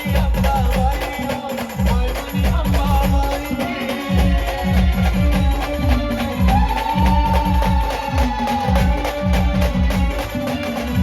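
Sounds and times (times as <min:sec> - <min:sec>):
held melody line: 0:00.0 - 0:11.0
shaker percussion: 0:00.0 - 0:11.0.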